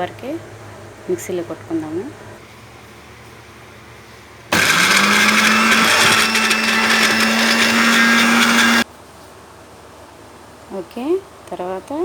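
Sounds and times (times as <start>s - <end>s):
mixer grinder motor humming: 4.5s - 8.8s.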